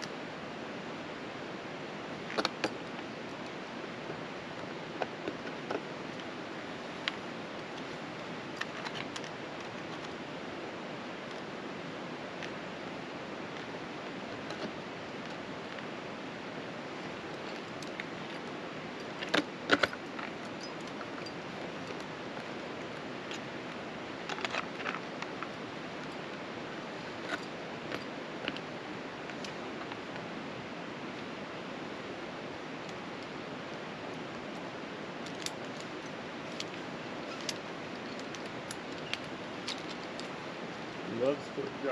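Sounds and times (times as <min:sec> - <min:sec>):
steady hiss: 0:00.0 - 0:41.9.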